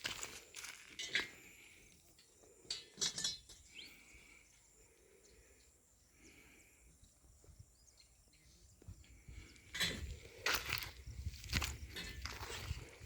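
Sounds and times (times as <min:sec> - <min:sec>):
footsteps on road: 0:00.0 - 0:01.0
faint outdoor ambience: 0:00.0 - 0:13.0
bird chirp: 0:03.5 - 0:09.7.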